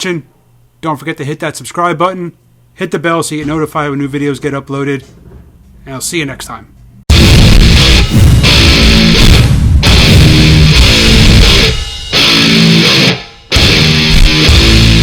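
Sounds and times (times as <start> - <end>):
distorted electric guitar: 7.1 - 15.0
heavy rock music: 7.1 - 15.0.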